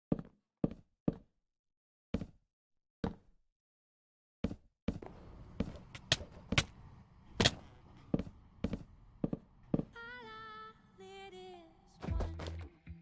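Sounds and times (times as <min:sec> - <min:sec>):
steady background noise: 0:05.0 - 0:10.3.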